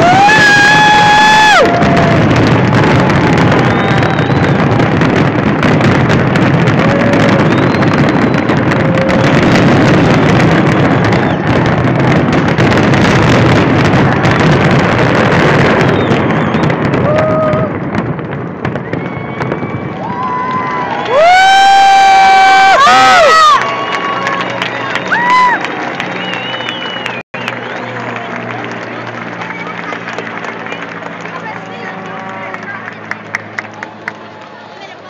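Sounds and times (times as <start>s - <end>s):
crowd voices: 0.0s - 18.1s, 22.7s - 35.0s
fireworks booms and crackles: 0.0s - 33.6s
people shouting: 6.4s - 10.4s.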